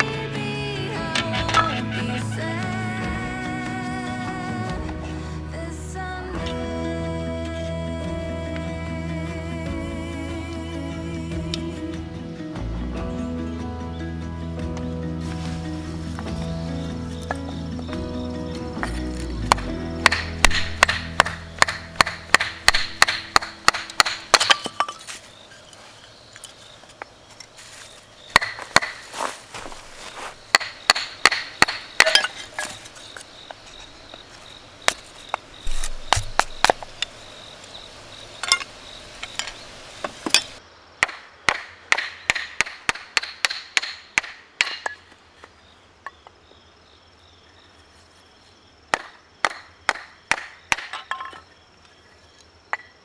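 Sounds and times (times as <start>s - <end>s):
hatchet chopping firewood: 15.2s - 25.2s, 28.2s - 37.5s, 38.4s - 45.1s, 48.9s - 51.4s
crickets chirping: 15.2s - 42.3s, 44.8s - 53.0s.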